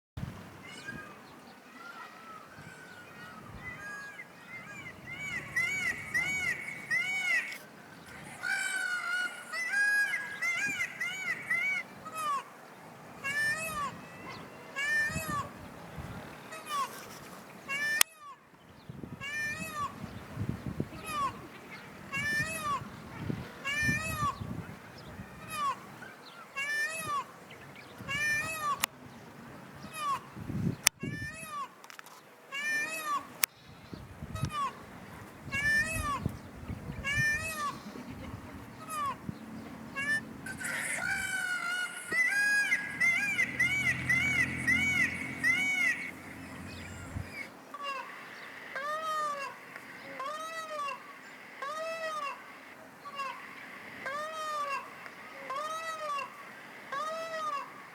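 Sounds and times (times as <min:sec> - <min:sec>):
peafowl wailing calls: 0:00.6 - 0:12.6, 0:13.2 - 0:15.6, 0:22.1 - 0:22.9, 0:25.1 - 0:27.3, 0:28.0 - 0:28.9, 0:35.5 - 0:57.9.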